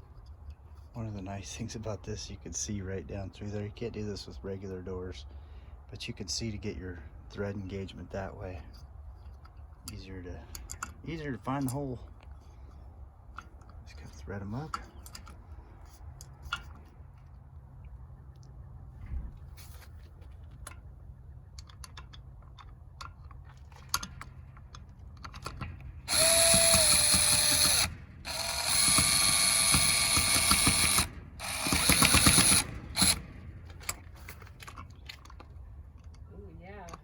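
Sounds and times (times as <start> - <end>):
light clicks of handled bolts: 6.3 - 18.6, 20.4 - 29.2, 32.2 - 37.0
cordless drill driving bolts: 25.2 - 34.2.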